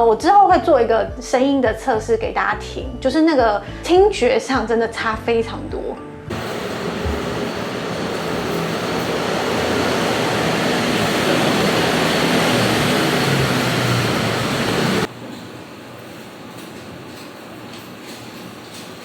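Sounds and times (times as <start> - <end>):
street traffic noise: 6.3 - 15.1
window sliding shut: 6.3 - 15.1.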